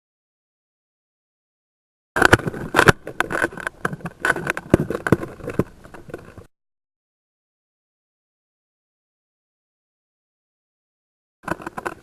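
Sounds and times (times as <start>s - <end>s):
sharp clicks and knocks: 2.2s - 6.5s, 11.4s - 12.0s.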